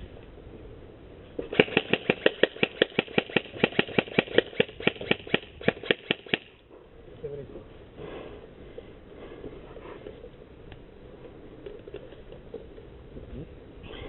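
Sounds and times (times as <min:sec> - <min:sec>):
airsoft rifle shots: 0:01.4 - 0:06.6.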